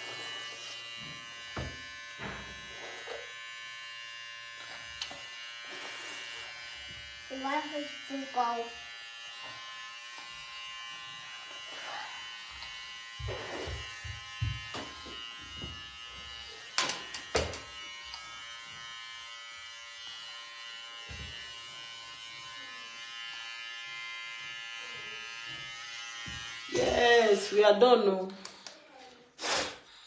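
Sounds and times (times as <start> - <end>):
electric hair clipper humming: 0.0 - 27.6.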